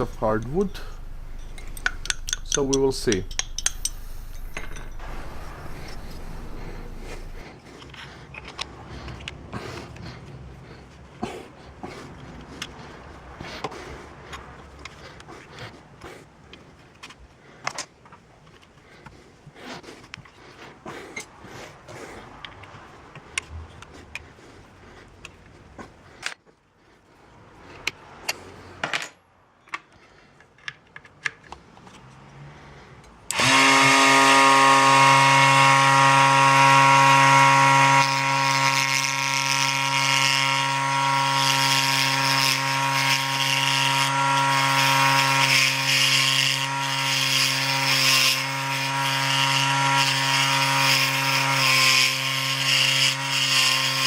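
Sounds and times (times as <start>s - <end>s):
mini lathe motor humming whine: 4.0s - 7.4s, 33.3s - 54.0s
clicks and knocks of handling: 27.8s - 32.2s.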